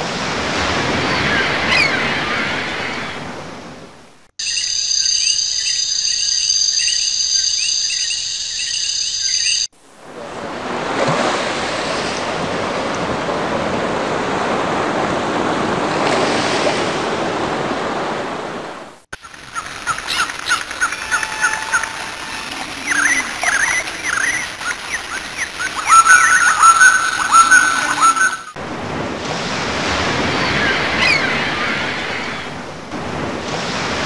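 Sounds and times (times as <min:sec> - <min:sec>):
high chirping calls: 0:04.4 - 0:09.7, 0:19.2 - 0:28.6
rushing surf-like noise: 0:09.7 - 0:34.0.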